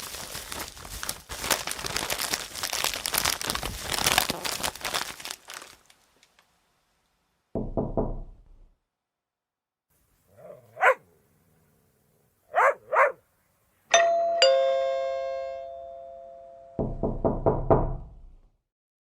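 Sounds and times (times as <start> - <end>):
rapid knocking on a door: 7.6 - 8.7, 16.8 - 18.3
dog barks: 10.3 - 11.2, 12.5 - 13.2
two-tone doorbell chime: 13.9 - 16.8.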